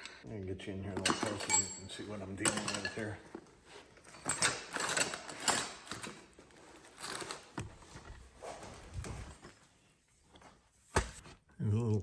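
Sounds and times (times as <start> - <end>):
handling clicks and knocks: 0.0 - 0.2, 0.9 - 9.6.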